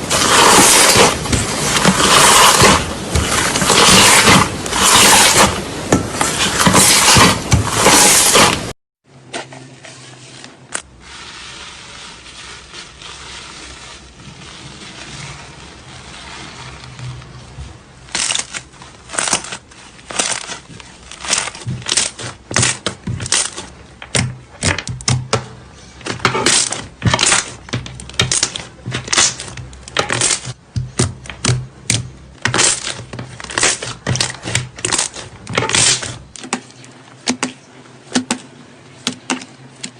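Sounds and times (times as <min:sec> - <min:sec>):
slime squishing by hand: 0:00.0 - 0:08.7, 0:09.5 - 0:39.9
slime popping and crackling: 0:18.0 - 0:36.4.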